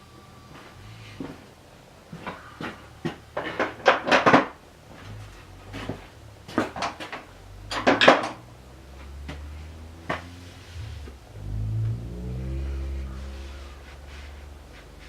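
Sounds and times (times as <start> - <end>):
faint low hum: 4.6 - 15.0.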